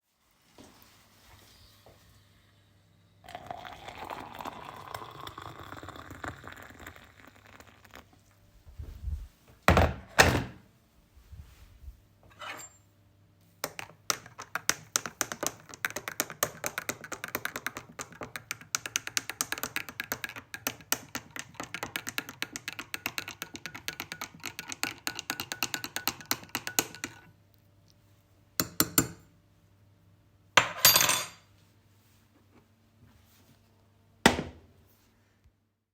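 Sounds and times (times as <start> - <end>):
coffee pouring into cup: 3.2 - 8.3
spoon stirring clinking cup: 3.3 - 8.0, 13.6 - 27.3, 28.6 - 29.2.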